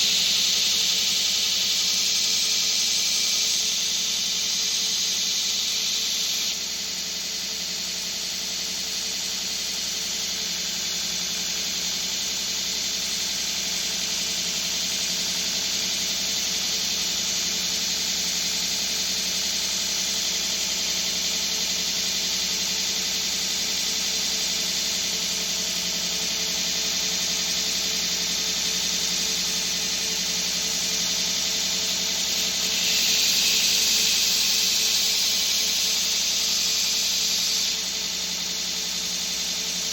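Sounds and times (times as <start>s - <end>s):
grinder motor hum: 31.2s - 39.9s.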